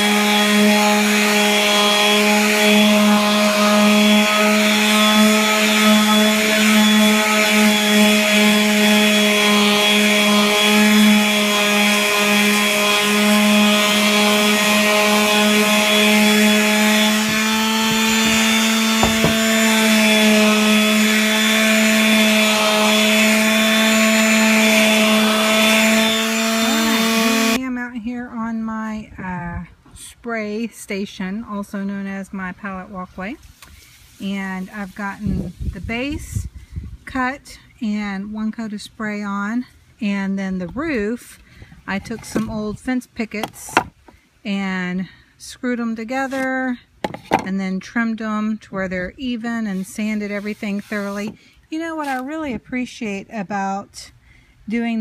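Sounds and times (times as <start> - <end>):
electric sander on wood: 0.0 - 27.6.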